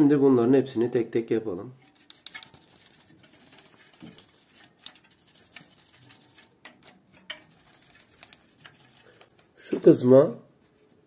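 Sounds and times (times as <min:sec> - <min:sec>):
toothbrush scratching: 0:01.8 - 0:06.6, 0:07.3 - 0:09.4.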